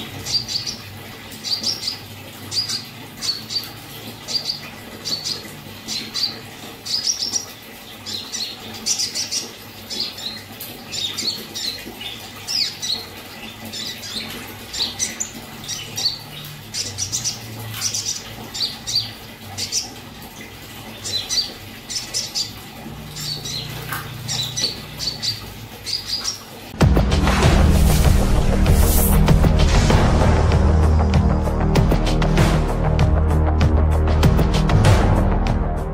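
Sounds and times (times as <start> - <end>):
bird chirping sharply: 21.0 - 26.5.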